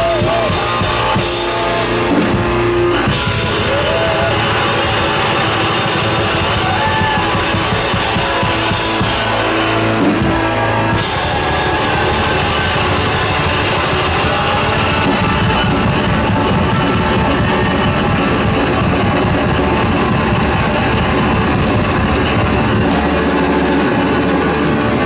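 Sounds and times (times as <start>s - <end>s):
metal band playing live: 0.0s - 25.0s.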